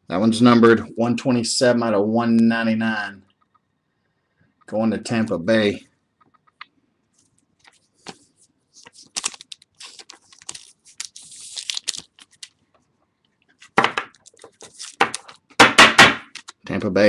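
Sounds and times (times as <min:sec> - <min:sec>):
plastic packaging crinkling: 0:07.2 - 0:12.8, 0:13.5 - 0:15.6, 0:16.3 - 0:16.6
packaging rustle: 0:08.8 - 0:12.6, 0:13.6 - 0:15.5
trading cards clicking and tapping: 0:13.6 - 0:16.6.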